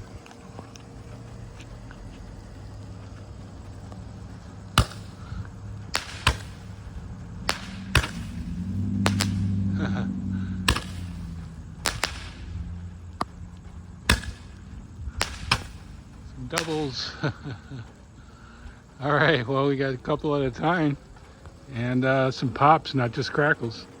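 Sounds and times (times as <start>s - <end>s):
fireworks popping and crackling: 0.0s - 18.7s
low steady rumble: 0.0s - 24.0s.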